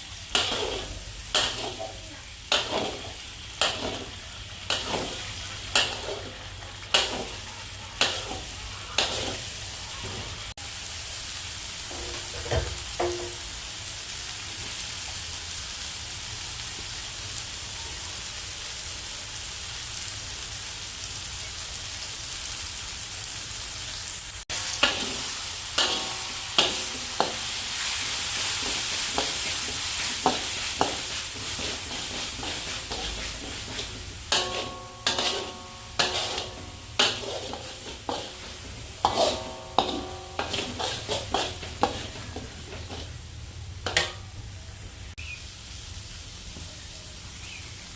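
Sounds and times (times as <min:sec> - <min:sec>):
food sizzling in oil: 0:00.0 - 0:47.9
metal spatula scraping pan: 0:00.3 - 0:10.4, 0:24.6 - 0:43.2, 0:43.8 - 0:44.3.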